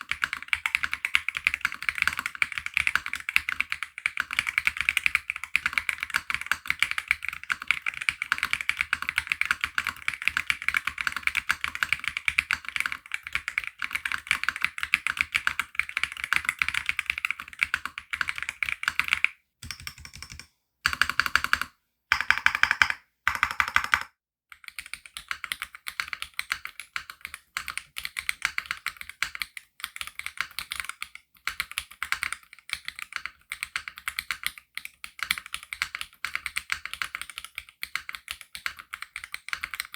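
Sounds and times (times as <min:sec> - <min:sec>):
mechanical keyboard typing: 0:00.0 - 0:24.1.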